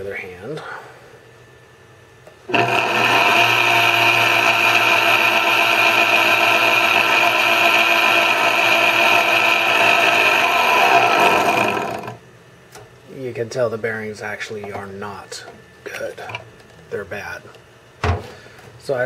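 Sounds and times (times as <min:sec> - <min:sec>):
blender running roughly: 0:02.5 - 0:12.2.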